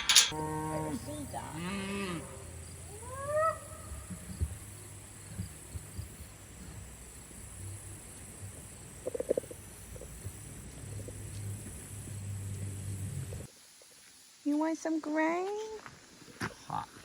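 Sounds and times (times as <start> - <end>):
cattle mooing: 0.3 - 3.7.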